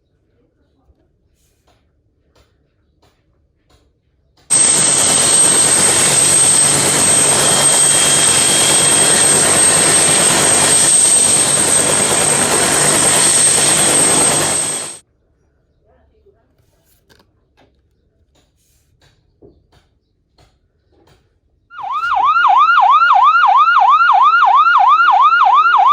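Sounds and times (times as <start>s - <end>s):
aircraft-like engine roar: 4.5s - 15.0s
high whine: 4.5s - 15.0s.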